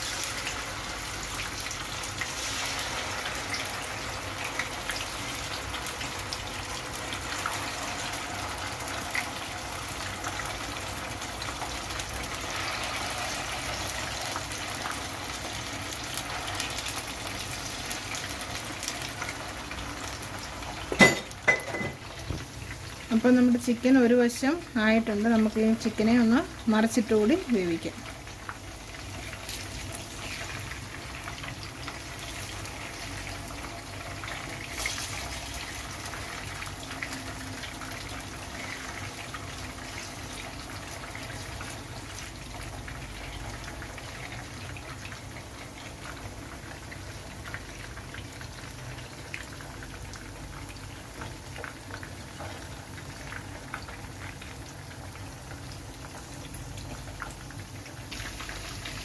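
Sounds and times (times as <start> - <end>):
chicken sizzling in oil: 0.0 - 59.0.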